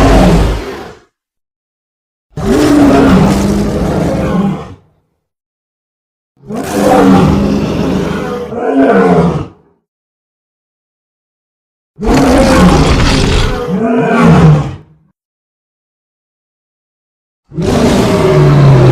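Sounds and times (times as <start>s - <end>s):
creature roar: 0.0s - 1.0s, 2.4s - 4.8s, 6.4s - 9.6s, 12.0s - 14.9s, 17.5s - 18.9s.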